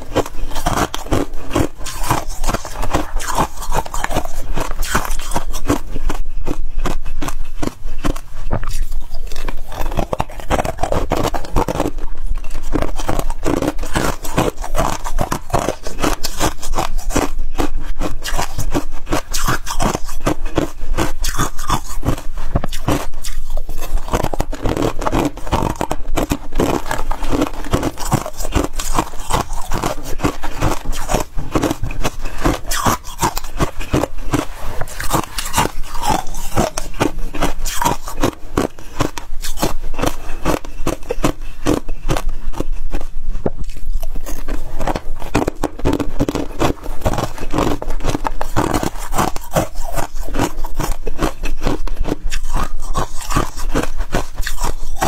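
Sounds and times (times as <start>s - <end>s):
frost being chewed: 0.0s - 55.0s.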